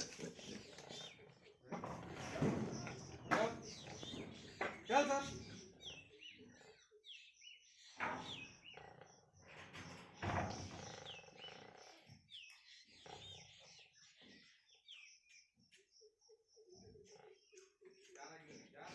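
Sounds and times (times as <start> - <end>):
pigs squealing: 0.0 - 1.3
pigs grunting: 0.0 - 6.9, 7.8 - 14.8
small birds chirping: 0.0 - 18.9.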